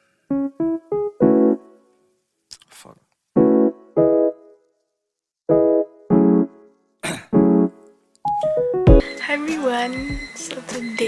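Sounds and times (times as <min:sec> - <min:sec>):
piano chords: 0:00.3 - 0:02.0, 0:03.4 - 0:04.6, 0:05.5 - 0:10.1.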